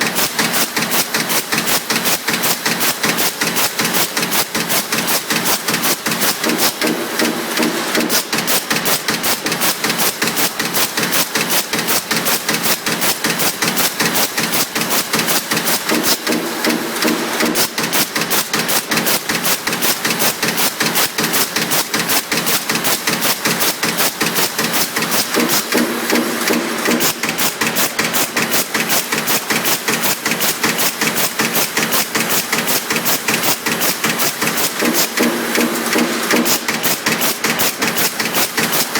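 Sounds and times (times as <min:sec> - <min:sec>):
power press stamping sheet metal: 0:00.0 - 0:38.9
machine hum: 0:25.1 - 0:28.5.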